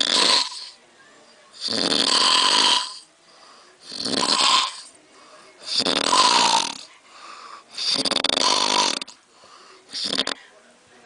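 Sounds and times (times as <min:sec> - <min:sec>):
man snoring loudly: 0:00.0 - 0:00.8, 0:01.6 - 0:03.1, 0:03.8 - 0:05.0, 0:05.6 - 0:06.9, 0:07.7 - 0:09.2, 0:09.9 - 0:10.4.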